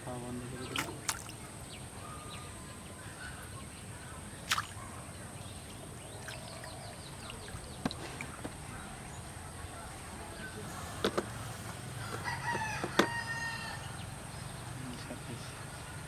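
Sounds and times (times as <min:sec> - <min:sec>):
faint bird chirps: 0:00.5 - 0:10.6.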